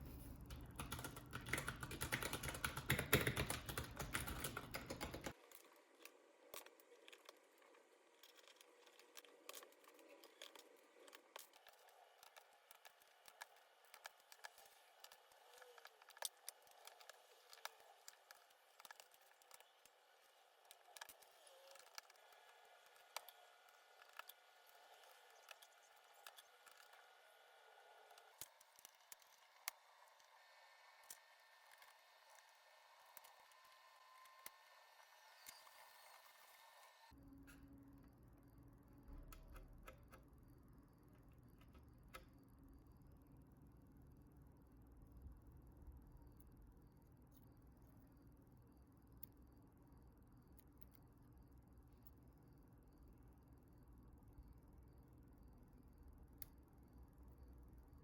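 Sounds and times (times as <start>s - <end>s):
mechanical keyboard typing: 0.5s - 5.4s.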